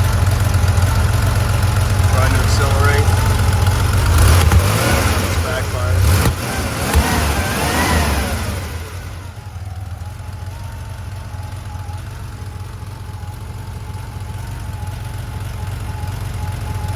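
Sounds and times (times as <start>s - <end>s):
car engine idling: 0.0s - 16.9s.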